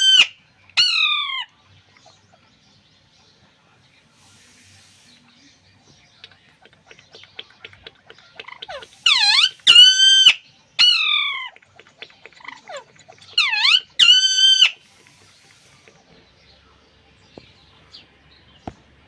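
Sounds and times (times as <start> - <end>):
parakeet calling: 0.0 - 2.5, 6.1 - 18.1
soft bird clicks: 5.9 - 9.7, 11.5 - 13.4.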